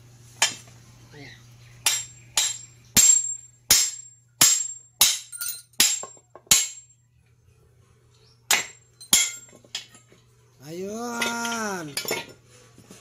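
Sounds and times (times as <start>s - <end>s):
metal tool striking metal: 1.8s - 6.9s, 8.5s - 9.5s.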